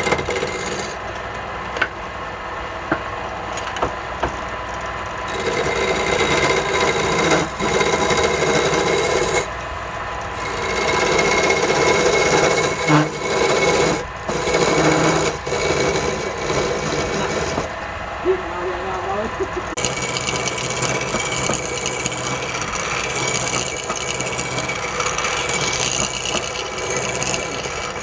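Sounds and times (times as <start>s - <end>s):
turning tool scraping wood: 0.0s - 1.0s, 5.2s - 9.5s, 10.3s - 17.8s, 19.8s - 28.0s
wood lathe humming: 0.0s - 1.0s, 5.2s - 9.6s, 10.2s - 17.8s, 19.7s - 28.0s.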